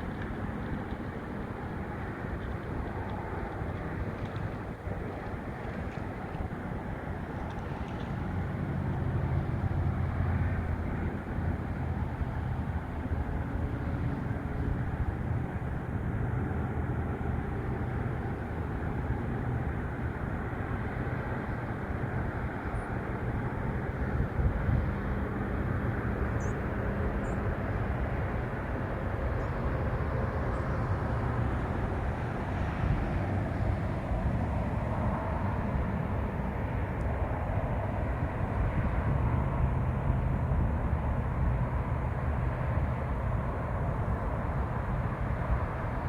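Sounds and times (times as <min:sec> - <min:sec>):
low outdoor rumble with hum: 0:00.0 - 0:46.0.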